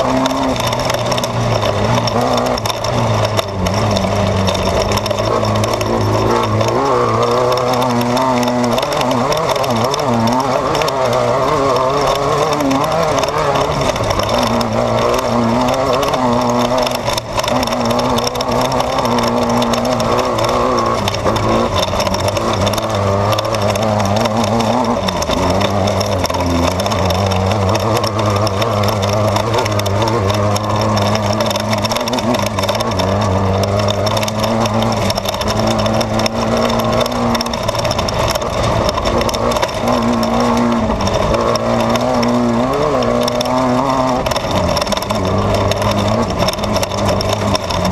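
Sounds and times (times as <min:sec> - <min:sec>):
car driving at speed: 0:00.0 - 0:47.9
race car engine revving: 0:00.0 - 0:47.9.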